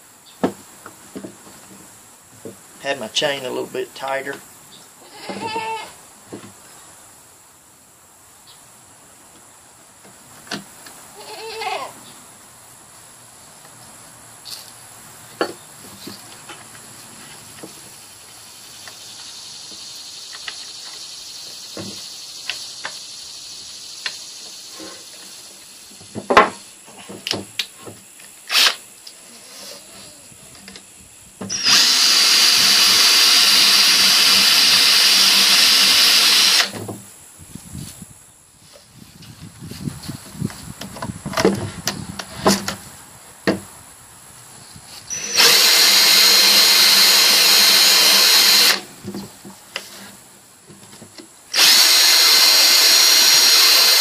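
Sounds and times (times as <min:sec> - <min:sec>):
goat bleating: 0:05.0 - 0:06.0, 0:11.1 - 0:12.0
drill grinding chainsaw chain: 0:28.5 - 0:28.8, 0:31.5 - 0:36.7, 0:45.1 - 0:48.9, 0:51.5 - 0:54.0.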